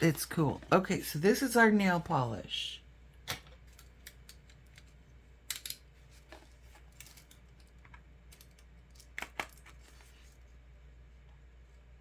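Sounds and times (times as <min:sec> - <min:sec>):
small hard items clicking: 0:05.5 - 0:05.8.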